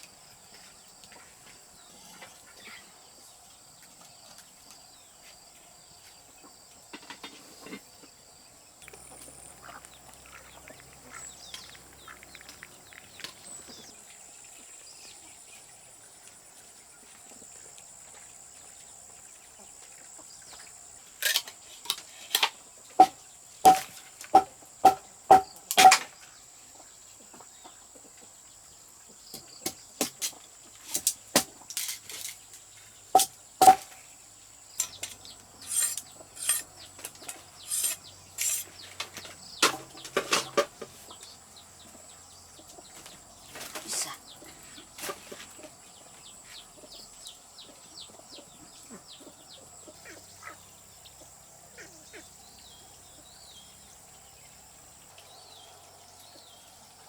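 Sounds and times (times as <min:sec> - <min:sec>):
sharp knocks and clinks: 0:21.2 - 0:26.1, 0:33.2 - 0:33.9, 0:34.8 - 0:40.7.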